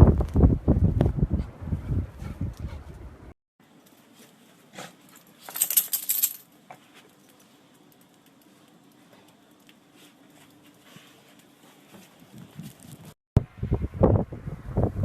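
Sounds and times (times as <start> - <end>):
metallic jangling: 5.1 - 6.5.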